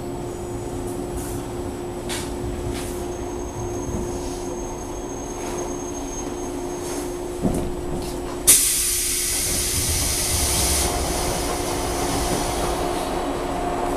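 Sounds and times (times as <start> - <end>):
electric train hum: 0.0 - 13.9
compressed air hiss: 8.5 - 12.8.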